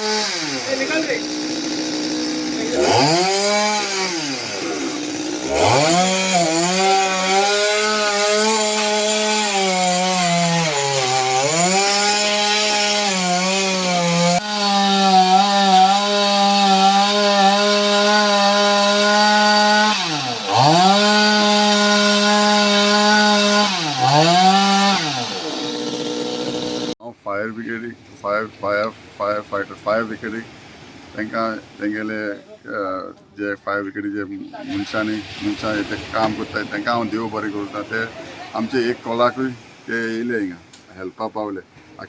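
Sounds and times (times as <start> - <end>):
chainsaw cutting wood: 0.0 - 27.0.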